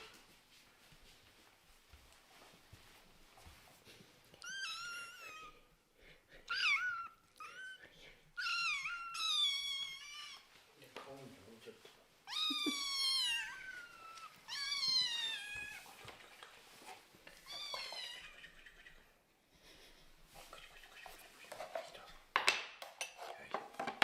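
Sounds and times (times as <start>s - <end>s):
kittens meowing: 4.4s - 5.7s, 6.4s - 10.5s, 12.2s - 16.0s, 17.3s - 18.8s.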